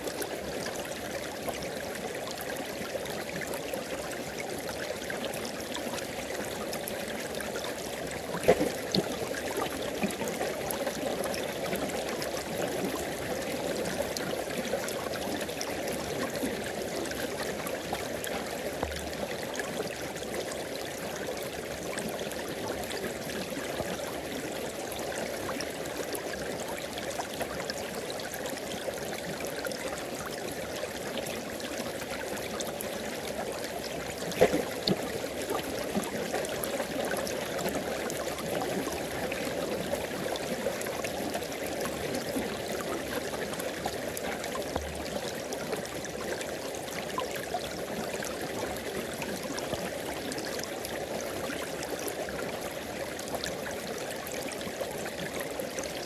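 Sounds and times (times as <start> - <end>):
splash: 8.3 - 9.7, 34.2 - 35.8.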